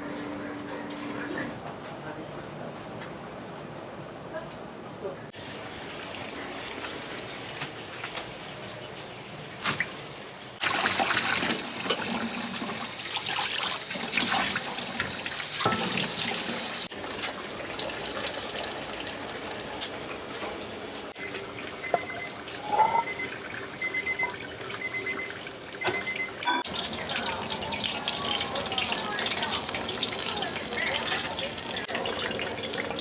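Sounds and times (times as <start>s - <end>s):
water running from tap: 10.6s - 20.3s, 21.5s - 33.0s
dishes clattering: 15.6s - 16.1s, 21.9s - 23.2s, 25.8s - 26.9s.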